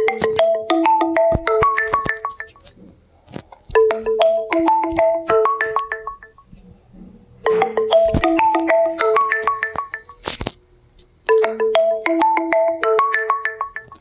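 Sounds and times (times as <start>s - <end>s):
phone ringtone melody: 0.0s - 2.7s, 3.8s - 6.4s, 7.5s - 10.2s, 11.3s - 14.0s.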